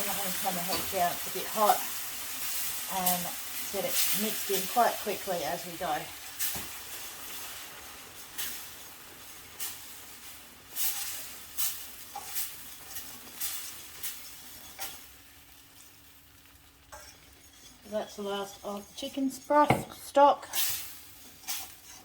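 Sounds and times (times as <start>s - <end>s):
roux sizzling in a pan: 0.0s - 22.0s
utensil scraping and knocking pan: 16.9s - 22.0s.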